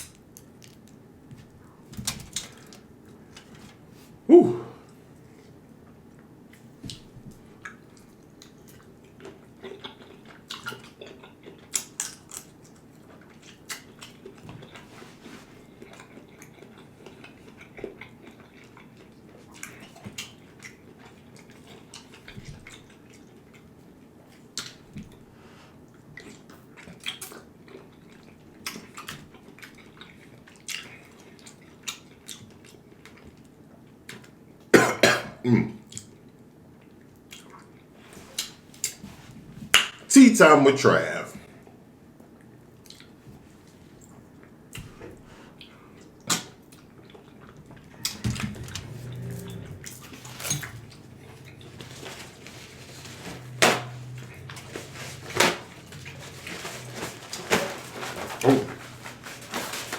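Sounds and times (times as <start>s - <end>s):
wet chewing and lip smacks: 7.6s - 14.8s, 35.9s - 39.0s, 42.3s - 43.2s.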